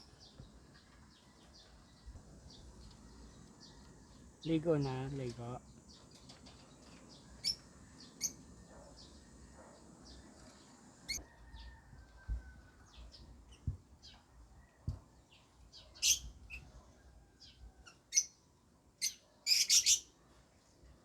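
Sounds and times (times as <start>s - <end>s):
lovebirds chirping: 0.0s - 20.7s.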